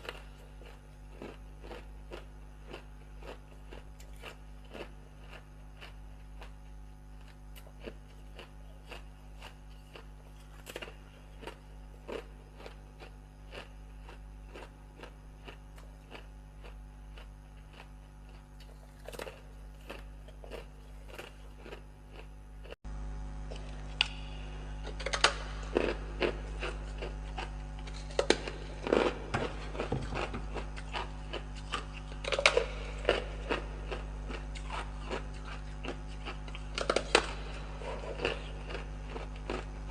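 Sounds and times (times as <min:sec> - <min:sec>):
ice being chewed: 0:00.0 - 0:22.8, 0:24.8 - 0:39.9.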